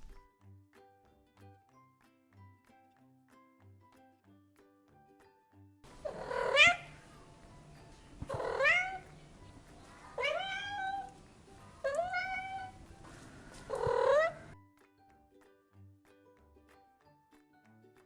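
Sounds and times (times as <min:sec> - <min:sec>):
cat meowing: 0:06.0 - 0:07.1, 0:08.2 - 0:14.6.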